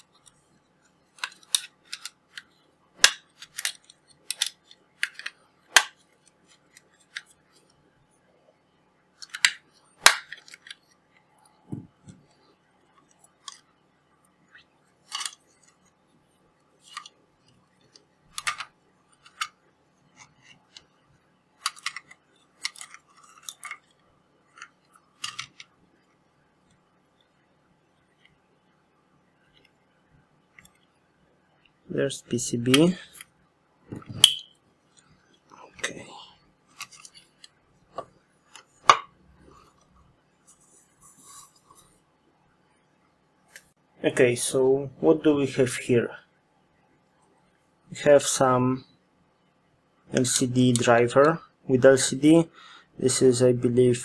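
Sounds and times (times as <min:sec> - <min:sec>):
plastic parts clicking and tapping: 0:01.1 - 0:07.4, 0:09.2 - 0:13.7, 0:14.5 - 0:15.9, 0:16.8 - 0:20.9, 0:21.6 - 0:25.7, 0:36.7 - 0:39.2
soft scrape: 0:40.4 - 0:42.0.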